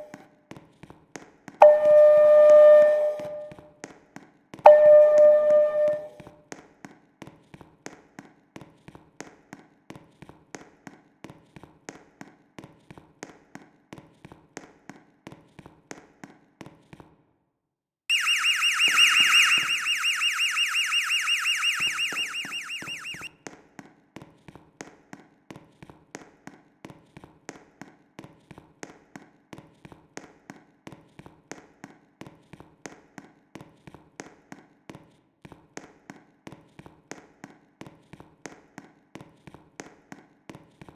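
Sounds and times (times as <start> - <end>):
high-pitched pulsing alarm horn: 1.6 - 3.6, 4.7 - 6.2, 18.1 - 23.3.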